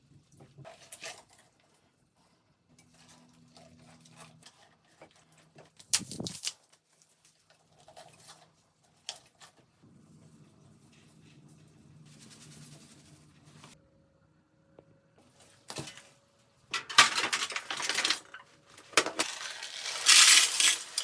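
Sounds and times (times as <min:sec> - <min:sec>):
handling clicks and rustles: 0:15.4 - 0:21.0.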